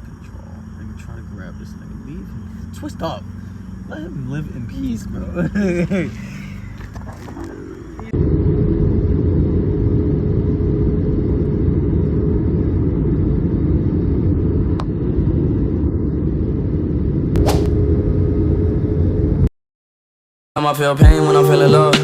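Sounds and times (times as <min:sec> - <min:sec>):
vehicle rumble and hum: 0:00.0 - 0:19.5
brief sharp sound: 0:17.4 - 0:17.8.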